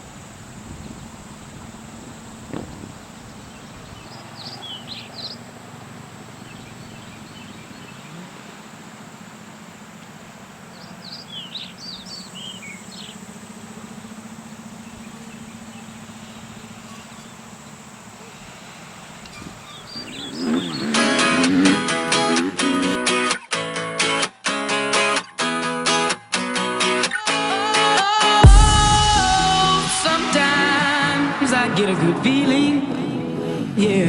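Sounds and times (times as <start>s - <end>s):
steady low hum: 0.0s - 23.0s
birds chirping: 0.6s - 23.6s.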